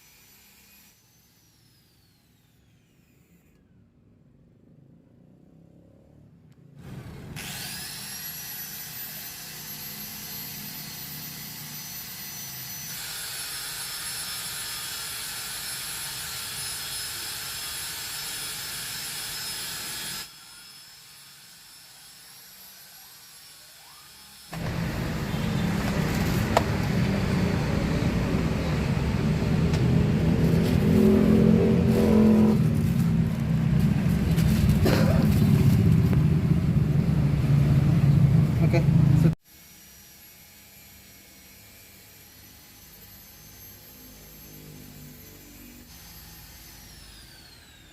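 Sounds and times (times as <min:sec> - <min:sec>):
small motor whining: 0:00.0 - 0:03.8, 0:06.8 - 0:36.2, 0:39.4 - 0:47.9
low-pitched machine running: 0:24.6 - 0:34.9.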